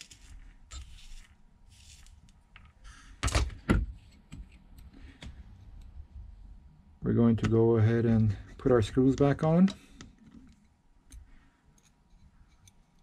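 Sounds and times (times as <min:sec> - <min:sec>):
small tools rubbing and ticking: 0:11.7 - 0:13.0.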